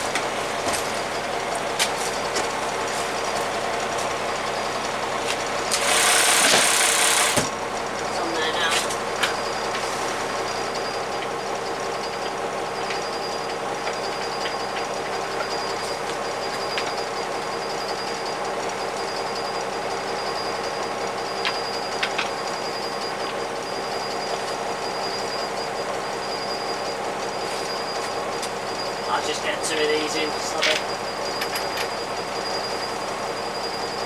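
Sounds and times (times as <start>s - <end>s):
diesel engine idling: 0.0s - 34.0s
thin high whine: 27.4s - 34.0s.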